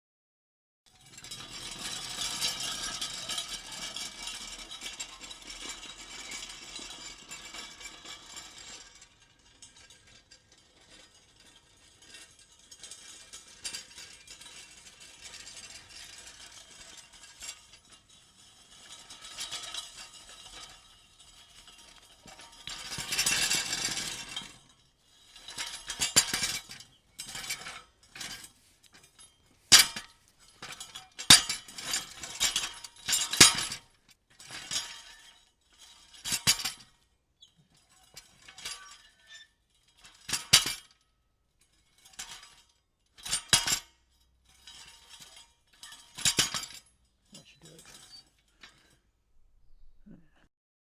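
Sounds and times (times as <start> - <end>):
metal tools clinking and rattling: 44.6 - 49.0.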